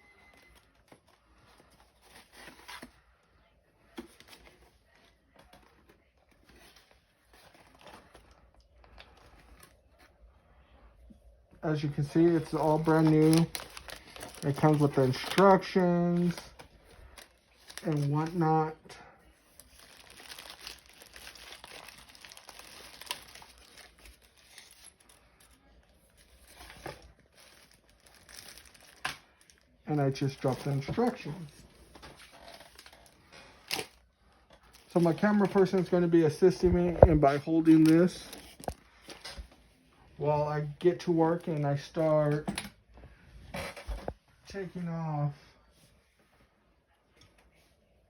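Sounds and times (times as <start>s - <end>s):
packaging and paper crinkling: 11.7s - 39.6s.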